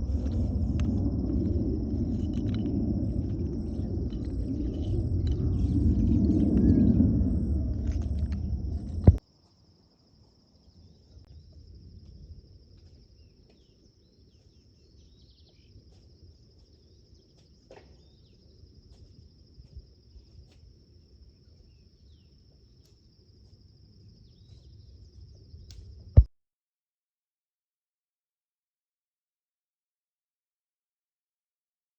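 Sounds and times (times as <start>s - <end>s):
loud low rumble: 0.0s - 9.2s
crickets trilling: 0.0s - 26.3s.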